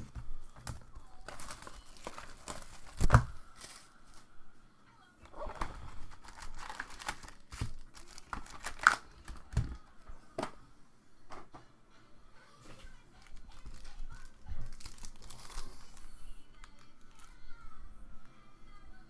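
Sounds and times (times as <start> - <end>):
plastic wrapping tearing and crinkling: 0.6 - 4.3, 5.3 - 9.8, 13.1 - 17.4.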